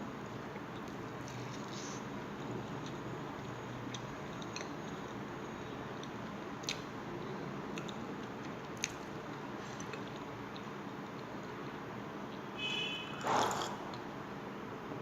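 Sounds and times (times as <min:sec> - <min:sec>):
wet mouth clicks: 0:02.8 - 0:05.2, 0:06.0 - 0:06.9, 0:07.8 - 0:11.3, 0:13.2 - 0:14.0
close chewing: 0:07.7 - 0:11.3.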